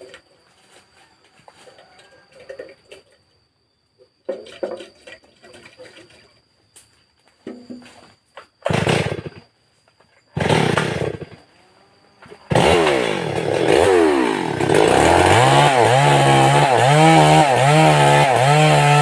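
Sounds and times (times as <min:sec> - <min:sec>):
chainsaw engine running: 0:08.6 - 0:09.4, 0:10.4 - 0:19.0.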